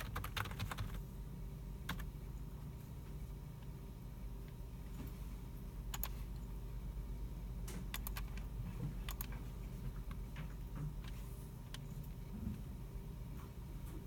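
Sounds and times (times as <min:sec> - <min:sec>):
computer keyboard clicks: 0:00.0 - 0:01.0, 0:07.9 - 0:08.4, 0:09.1 - 0:09.4
low hum of computer room: 0:00.0 - 0:14.0.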